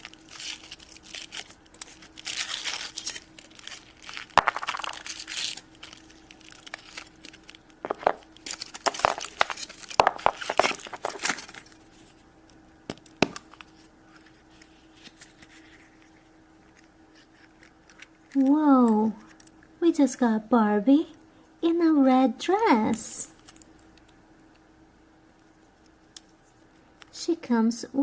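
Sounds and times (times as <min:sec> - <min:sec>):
foil wrapper tearing and crinkling: 0:00.0 - 0:11.8
plastic capsule clicks and crackles: 0:03.6 - 0:11.6.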